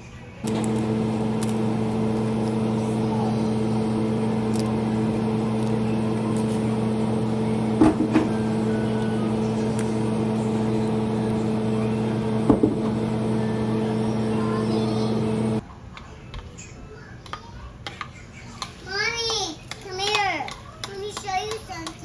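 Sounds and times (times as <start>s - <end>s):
appliance motor humming: 0.4s - 15.6s.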